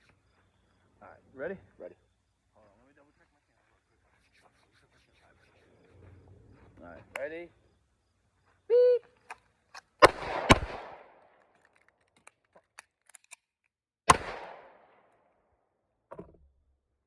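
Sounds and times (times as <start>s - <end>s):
magazine change clicks: 9.2s - 13.5s
pistol shots ringing: 10.0s - 11.4s, 14.1s - 15.1s.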